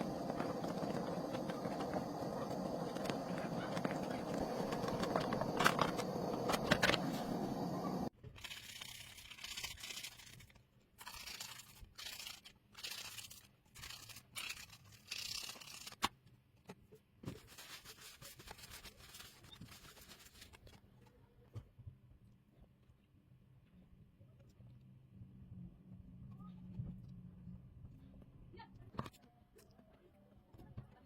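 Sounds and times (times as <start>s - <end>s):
loud steady noise: 0.0s - 8.1s
materials crinkling and scraping: 0.0s - 16.0s.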